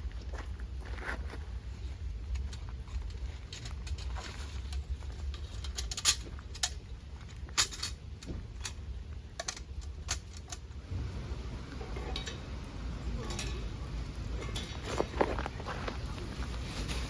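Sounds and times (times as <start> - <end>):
low steady rumble: 0.0 - 17.0.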